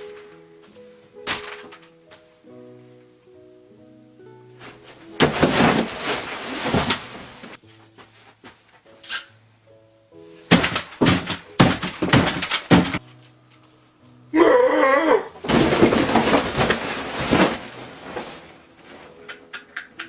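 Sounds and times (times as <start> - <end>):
soft background music: 0.0 - 20.0
thuds and crashing breaking noises: 5.2 - 7.6, 10.5 - 13.0, 15.4 - 18.5
wavering wobbling cry: 14.4 - 15.4.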